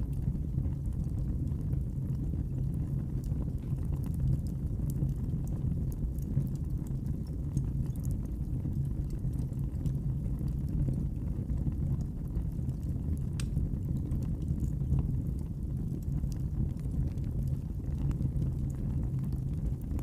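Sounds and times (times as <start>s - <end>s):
low fire rumble: 0.0s - 20.0s
wood fire crackling: 0.0s - 20.0s.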